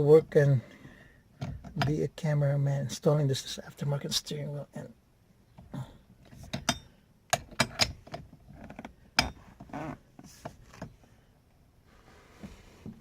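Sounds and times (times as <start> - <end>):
metallic clicks and knocks: 1.4 - 2.0, 6.2 - 9.4.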